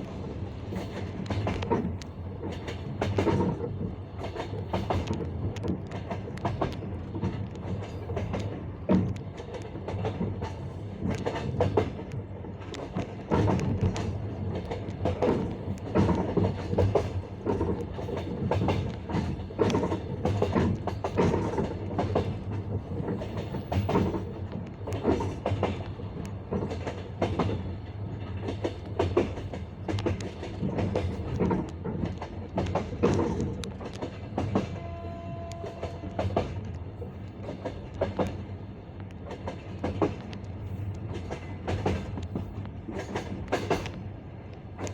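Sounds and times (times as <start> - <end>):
train running rumble: 0.0 - 44.9
train wheels clickety-clack: 0.0 - 44.9.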